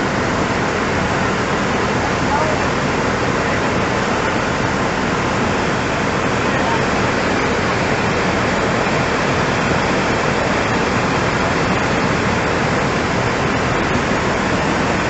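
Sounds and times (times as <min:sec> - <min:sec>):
rushing flood water roar: 0:00.0 - 0:15.0.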